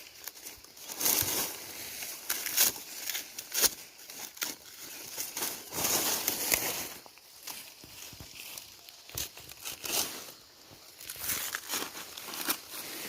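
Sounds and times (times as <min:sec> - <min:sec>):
dry maize stalks rustling: 0:00.0 - 0:13.0.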